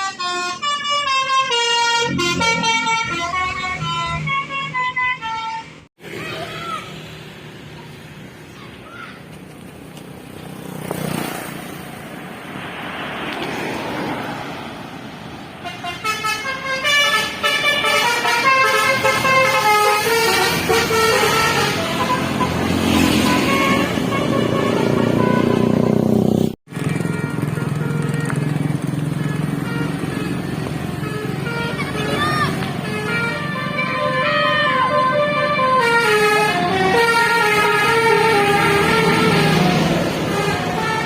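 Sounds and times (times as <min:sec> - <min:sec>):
bus horn tooting melody: 0:00.0 - 0:05.9, 0:15.6 - 0:41.0
loud vehicle sound: 0:00.0 - 0:41.0
passing traffic: 0:00.0 - 0:41.0.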